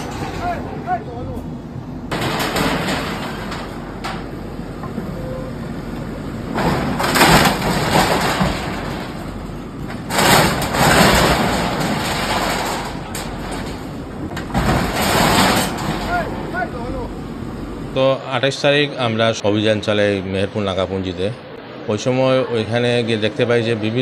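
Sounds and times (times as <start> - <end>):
bulldozer demolition crashing: 0.0 - 17.9.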